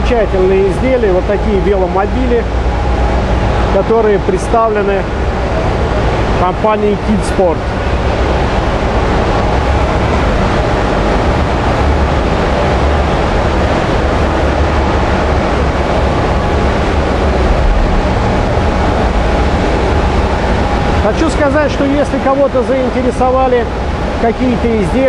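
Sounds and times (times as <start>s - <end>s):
busy exhibition hall din: 0.0s - 25.0s.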